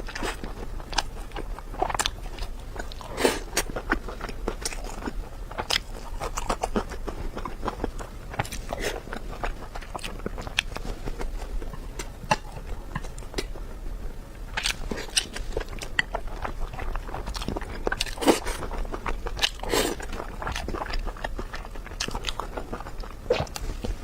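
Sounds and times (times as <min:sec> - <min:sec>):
person chewing: 0:00.0 - 0:13.6, 0:14.4 - 0:24.0.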